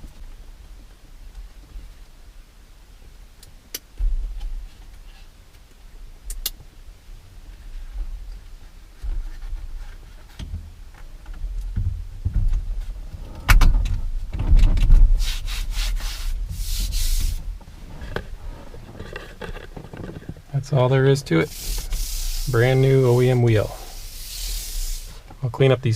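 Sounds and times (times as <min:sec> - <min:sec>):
scraping and rustling: 0:07.4 - 0:25.4
plastic parts rubbing and knocking: 0:08.9 - 0:25.4.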